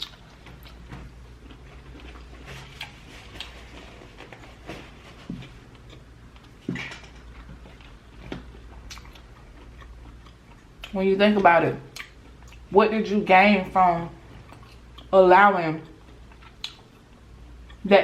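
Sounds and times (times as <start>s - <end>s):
chewing and mouth sounds: 0.0s - 6.7s, 7.3s - 11.0s, 11.8s - 12.7s, 14.2s - 15.2s, 15.8s - 17.9s
low steady hum: 0.0s - 18.0s.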